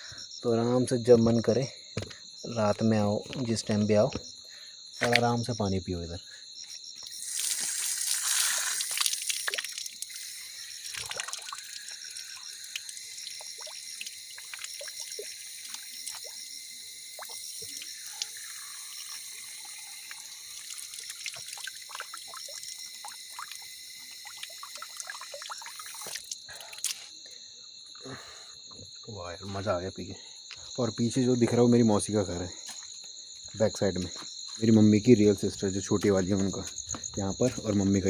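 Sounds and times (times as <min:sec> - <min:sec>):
crickets chirping: 0:00.0 - 0:38.0
tap water running and splashing: 0:07.1 - 0:27.0.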